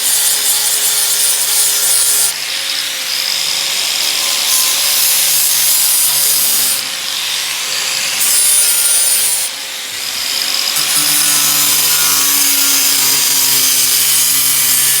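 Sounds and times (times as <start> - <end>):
sander grinding rust off steel: 0.0 - 15.0.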